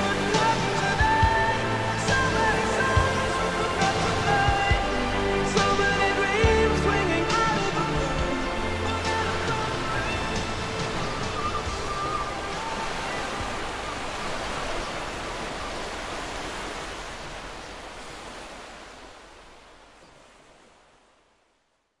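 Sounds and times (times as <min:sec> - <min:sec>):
music: 0:00.0 - 0:14.7
water rushing: 0:00.0 - 0:21.7.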